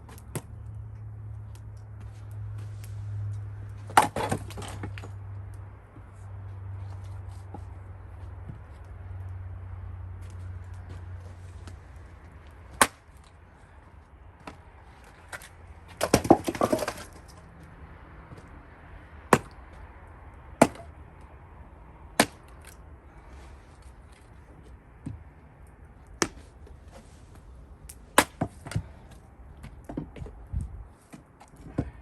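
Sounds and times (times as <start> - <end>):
wood cracking and falling: 3.8 - 5.2, 14.4 - 17.5
axe striking wood: 3.9 - 5.1, 12.7 - 13.1, 16.0 - 17.2, 19.3 - 19.6, 20.6 - 20.9, 22.2 - 22.8, 28.1 - 28.8.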